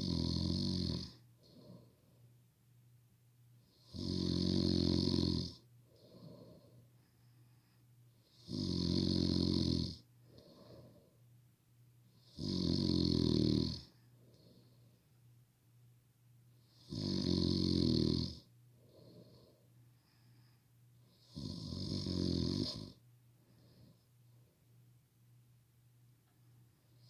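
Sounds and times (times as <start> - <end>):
person snoring loudly: 0.0 - 1.2, 3.9 - 5.6, 8.4 - 10.0, 12.3 - 13.8, 16.8 - 18.4, 21.2 - 23.0
soft breath out: 5.9 - 8.0, 10.2 - 11.2, 18.8 - 20.8, 23.4 - 24.1.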